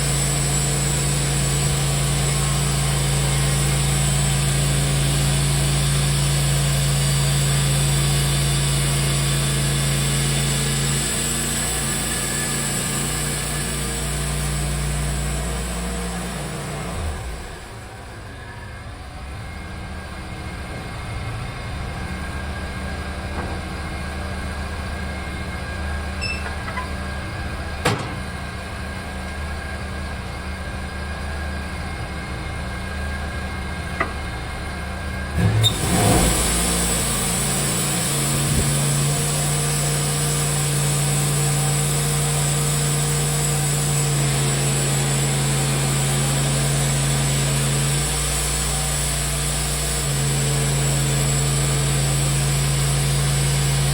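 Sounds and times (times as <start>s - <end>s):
sawmill engine running: 0.0s - 53.9s
clunks: 20.5s - 29.7s, 33.2s - 36.1s.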